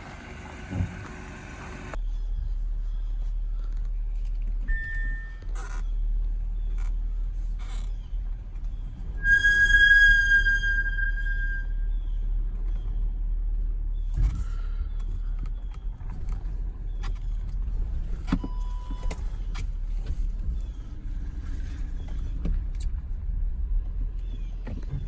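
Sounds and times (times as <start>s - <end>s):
car rolling with low rumble: 0.0s - 25.0s
brake squeal: 4.6s - 23.0s.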